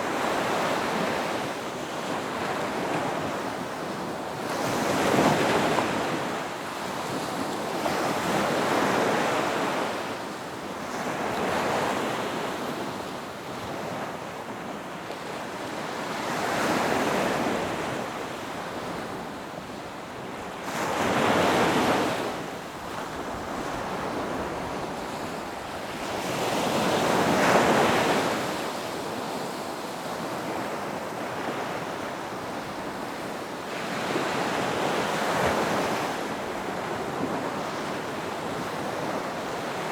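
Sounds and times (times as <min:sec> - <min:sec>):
ocean waves washing in and out: 0:00.0 - 0:39.9.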